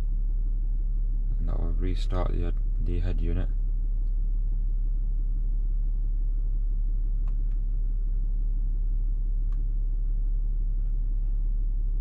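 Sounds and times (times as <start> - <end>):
low rumble and hum: 0.0 - 12.0
faint clicks: 7.2 - 7.7, 9.4 - 9.7.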